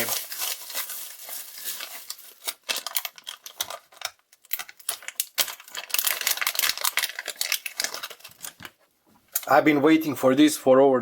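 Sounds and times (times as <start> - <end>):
plastic packaging crinkling: 0.0 - 9.6.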